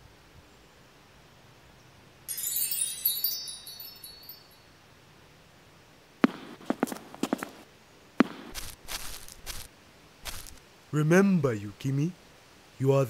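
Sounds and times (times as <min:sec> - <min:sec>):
wind chimes ringing: 0:02.3 - 0:05.0
sharp knocks: 0:06.2 - 0:07.6, 0:08.2 - 0:09.0.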